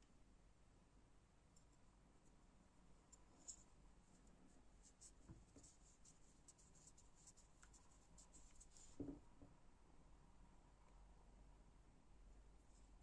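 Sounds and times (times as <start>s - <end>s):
faint scratching: 3.0s - 9.4s
soft knock: 8.9s - 9.6s.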